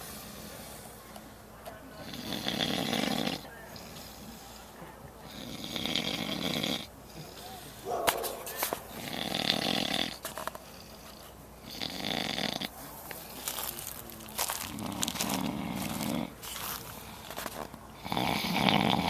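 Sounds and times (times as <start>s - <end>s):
man snoring heavily: 2.0s - 3.5s, 5.3s - 6.9s, 8.9s - 10.2s, 11.6s - 12.7s, 14.7s - 16.4s, 18.0s - 19.0s.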